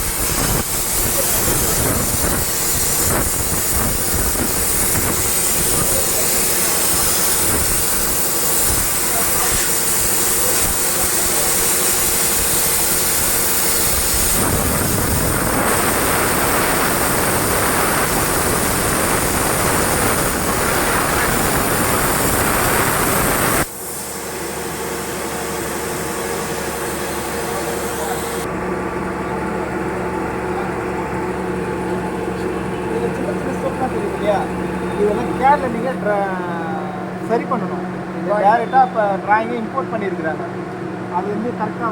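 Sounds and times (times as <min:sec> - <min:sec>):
plasma torch hissing: 0:00.0 - 0:28.5
machine hum: 0:00.0 - 0:41.9.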